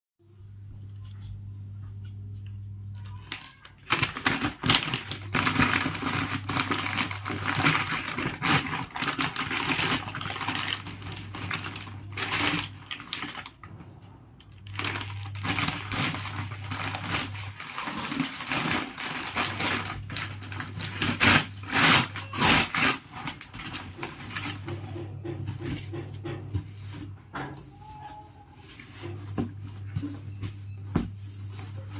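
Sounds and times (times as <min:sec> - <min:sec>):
steady low hum: 0:00.2 - 0:27.4
packaging rustling and crinkling: 0:03.3 - 0:13.7, 0:14.5 - 0:24.8.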